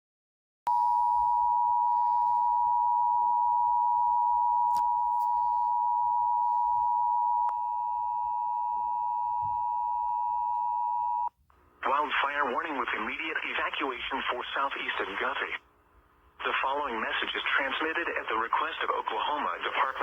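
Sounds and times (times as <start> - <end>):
two-tone alarm: 0.7 - 11.3.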